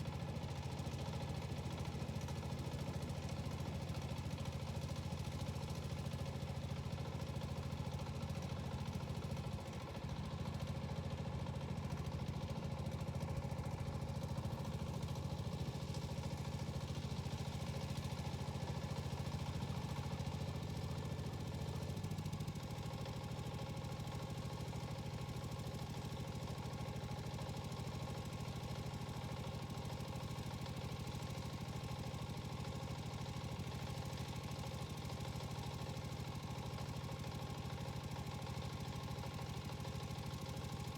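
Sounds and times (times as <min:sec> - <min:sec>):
small diesel engine idling: 0:00.0 - 0:40.9.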